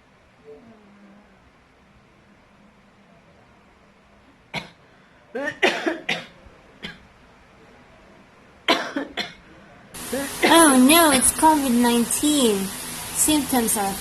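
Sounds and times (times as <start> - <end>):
person coughing: 5.4 - 7.0.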